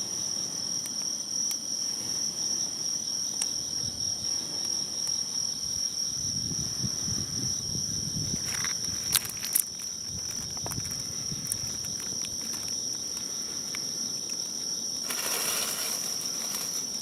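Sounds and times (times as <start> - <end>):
crickets trilling: 0.0 - 17.0
low rustling: 15.0 - 17.0.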